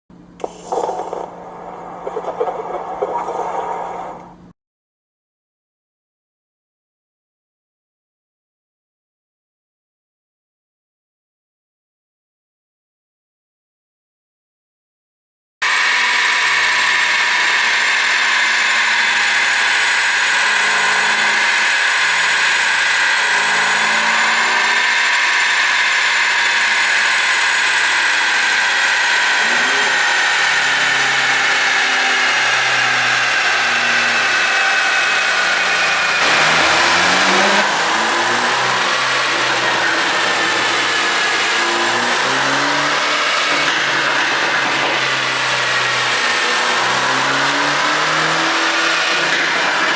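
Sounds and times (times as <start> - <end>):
high steady whine: 0.2 - 4.5
car engine revving: 15.6 - 49.9.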